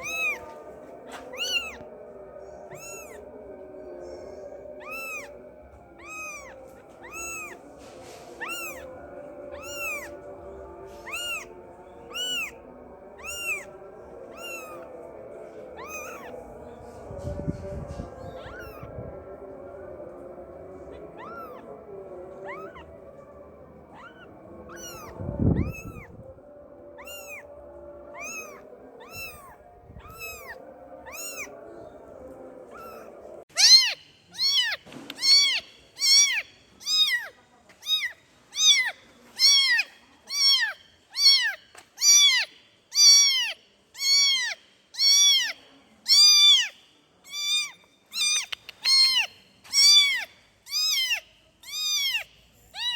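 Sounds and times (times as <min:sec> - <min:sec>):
kitten meowing: 0:00.0 - 0:02.0, 0:02.7 - 0:03.5, 0:04.8 - 0:07.7, 0:08.4 - 0:10.3, 0:11.0 - 0:12.6, 0:13.2 - 0:15.0, 0:15.7 - 0:16.6, 0:17.3 - 0:19.2, 0:20.9 - 0:21.7, 0:22.4 - 0:23.0, 0:23.9 - 0:26.2, 0:27.0 - 0:27.5, 0:28.1 - 0:31.6, 0:32.7 - 0:52.9.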